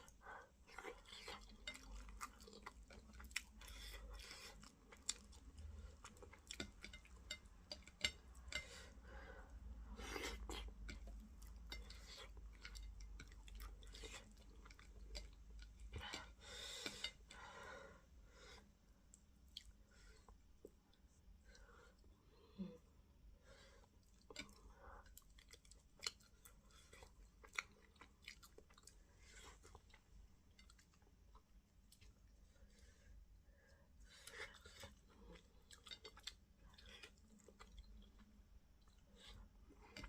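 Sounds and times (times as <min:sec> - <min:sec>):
chewing and lip smacking: 0:24.0 - 0:32.2, 0:34.1 - 0:40.0.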